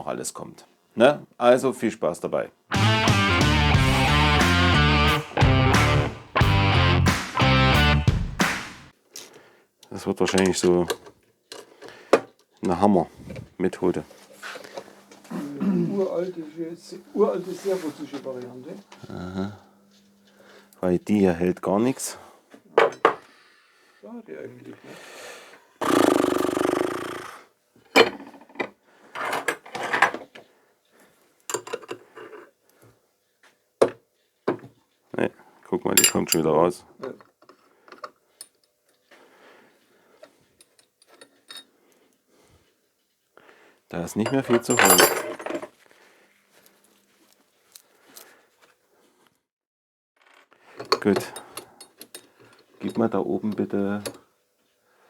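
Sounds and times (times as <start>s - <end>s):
metal knocks and clinks: 36.0s - 36.5s, 44.2s - 45.7s.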